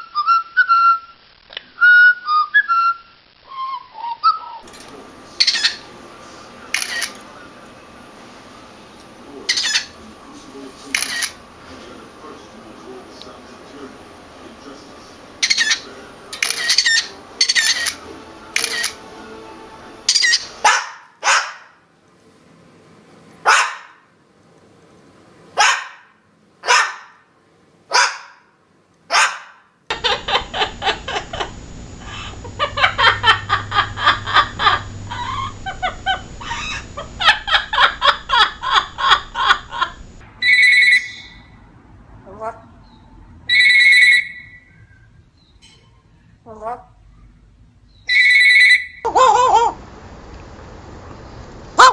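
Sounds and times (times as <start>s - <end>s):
parrot calling: 5.3s - 7.1s, 9.4s - 10.0s, 15.3s - 21.7s, 32.1s - 41.6s, 42.3s - 45.1s, 48.0s - 49.8s
parrot chattering: 5.4s - 6.0s, 9.5s - 10.0s, 11.0s - 11.4s, 15.4s - 19.1s, 20.0s - 21.6s, 32.1s - 39.8s, 40.4s - 41.5s, 43.5s - 44.7s, 48.1s - 49.8s.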